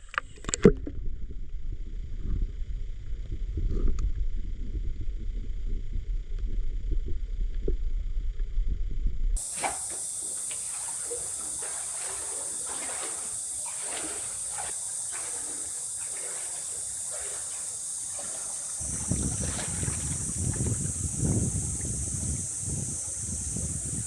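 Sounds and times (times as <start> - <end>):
wind buffeting microphone: 1.0 - 24.0
faint water trickling: 9.4 - 24.0
steady high hiss: 9.4 - 24.0.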